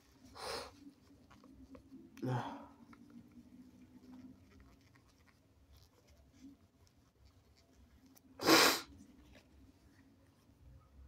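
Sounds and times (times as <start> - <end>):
sneeze or nose blow: 8.4 - 8.9.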